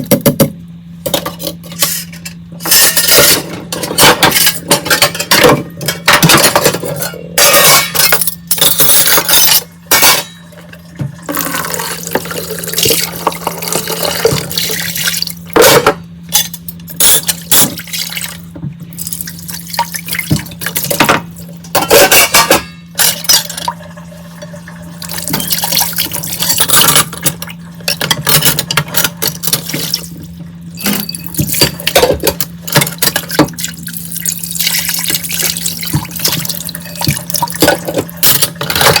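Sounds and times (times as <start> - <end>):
plates and glassware clinking: 1.1 - 10.5, 20.6 - 23.8
tap water running and splashing: 10.8 - 15.5, 17.3 - 21.5, 23.8 - 30.6, 31.2 - 38.8.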